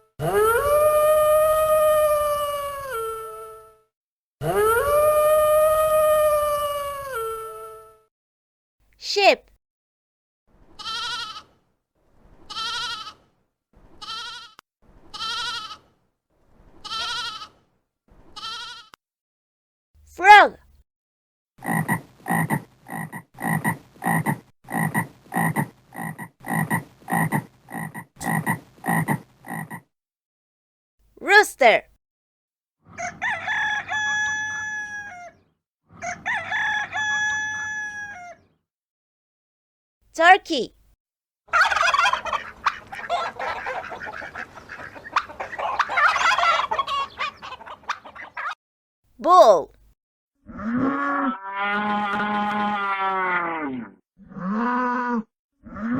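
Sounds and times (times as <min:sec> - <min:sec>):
turkey gobbling: 0:21.6 - 0:29.8, 0:41.5 - 0:48.6
frog croaking: 0:21.6 - 0:29.9.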